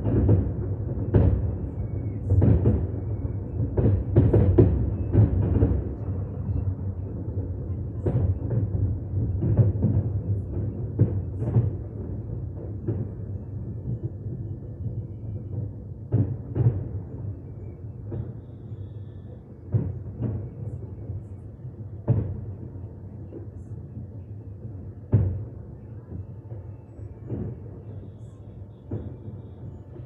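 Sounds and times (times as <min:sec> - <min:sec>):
fireworks booming: 0:00.0 - 0:06.2, 0:08.0 - 0:17.4, 0:18.0 - 0:21.4, 0:22.0 - 0:23.7, 0:24.6 - 0:30.0.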